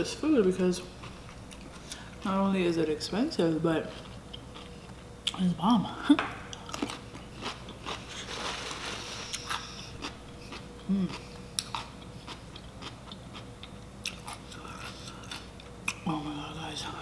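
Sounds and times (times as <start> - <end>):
food crunching: 6.4 - 16.0
chewing and biting: 6.5 - 8.2, 9.1 - 16.0.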